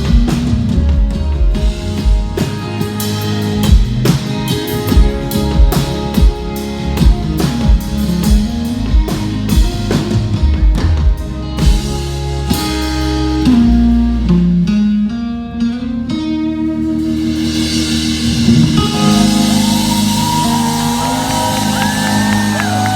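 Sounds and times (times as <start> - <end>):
rock band playing: 0.0 - 22.9
drum hits: 18.0 - 22.6.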